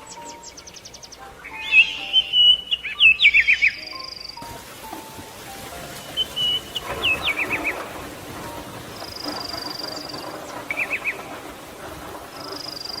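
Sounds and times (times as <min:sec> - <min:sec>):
high rapid bird trill: 0:00.0 - 0:04.5, 0:05.6 - 0:11.4
songbirds chirping: 0:00.0 - 0:13.0
steady background hiss: 0:00.0 - 0:13.0.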